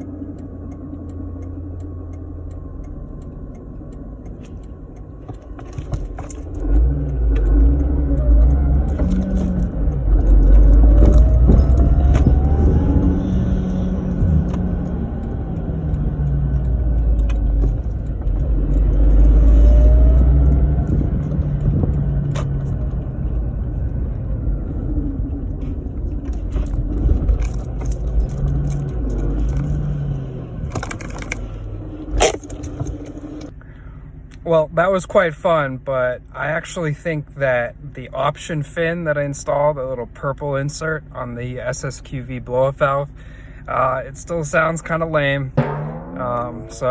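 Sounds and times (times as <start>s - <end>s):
car engine accelerating and revving: 0.0s - 33.5s, 45.6s - 46.9s
supercharger whine: 0.0s - 34.4s, 44.8s - 46.9s.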